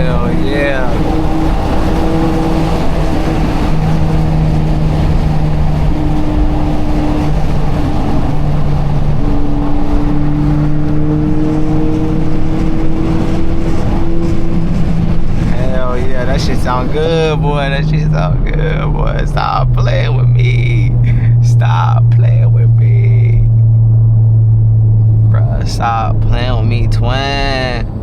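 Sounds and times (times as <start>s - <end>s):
car engine drone from cabin: 0.0s - 28.0s.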